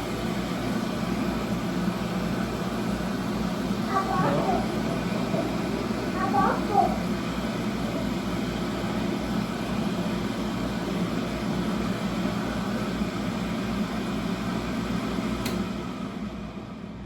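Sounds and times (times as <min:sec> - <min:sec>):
electric hand dryer blowing: 0:00.0 - 0:16.8.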